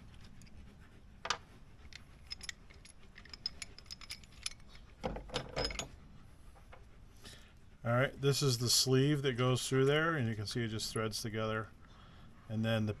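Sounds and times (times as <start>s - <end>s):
small metal clatter: 1.2s - 6.0s
metallic clicks of wrench and latch parts: 1.3s - 5.9s.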